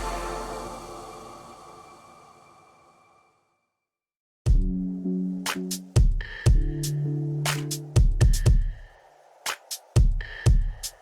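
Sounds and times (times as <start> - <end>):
synth bass notes: 0.0 - 1.6, 4.6 - 6.0, 6.6 - 8.0
electronic music: 0.0 - 1.9, 4.6 - 8.5
kick drum: 4.5 - 4.9, 5.9 - 7.0, 7.9 - 8.8, 10.0 - 11.0
crisp hi-hat hits: 5.5 - 11.0.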